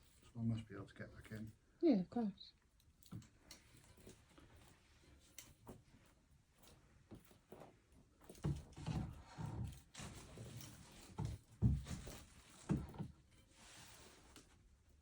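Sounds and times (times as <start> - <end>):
shuffling and rustling: 3.6 - 14.7
thumps and knocks: 11.1 - 13.2.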